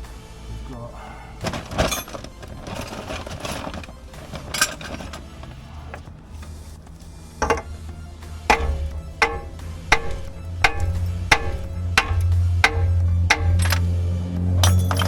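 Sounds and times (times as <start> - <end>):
hand tools rattling on metal: 1.5 - 6.7, 7.3 - 7.9, 8.5 - 14.0, 14.6 - 15.0
sharp metal knocks: 7.4 - 7.8, 8.5 - 13.9.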